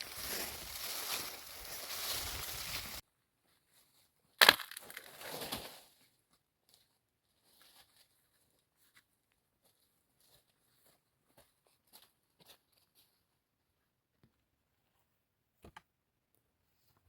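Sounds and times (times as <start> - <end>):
wood cracking and splintering: 4.4 - 5.2.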